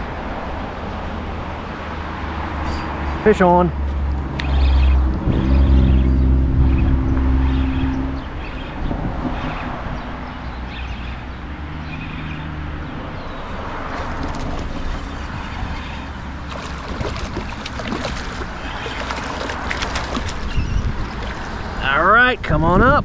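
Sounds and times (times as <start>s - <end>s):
low rumble: 3.9s - 10.4s
water rushing from a drain pipe: 13.9s - 22.0s.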